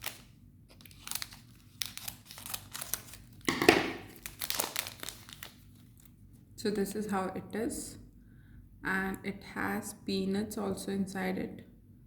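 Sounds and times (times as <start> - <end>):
plastic wrapper crinkling and tearing: 0.0 - 6.2.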